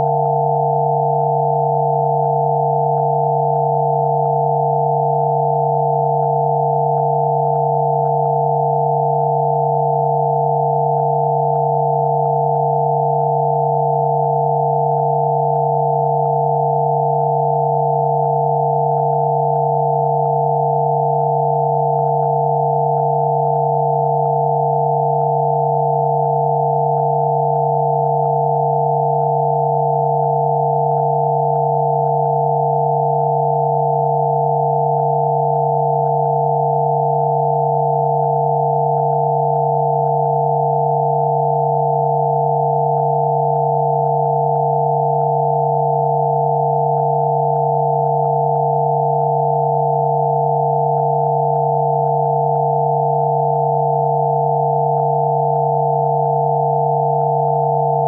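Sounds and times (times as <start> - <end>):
steady high sine tones: 0.0 - 58.0.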